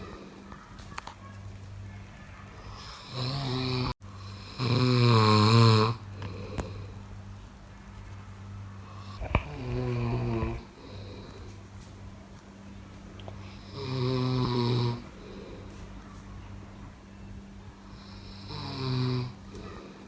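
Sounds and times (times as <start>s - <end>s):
steady low hum: 0.0s - 20.0s
person snoring: 2.8s - 7.0s, 9.0s - 11.6s, 13.4s - 15.7s, 18.0s - 20.0s.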